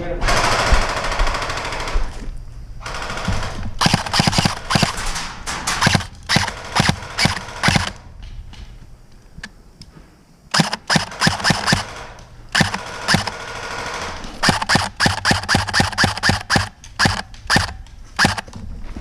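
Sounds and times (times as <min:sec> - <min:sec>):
airsoft guns firing: 0:02.8 - 0:08.2, 0:10.5 - 0:18.5.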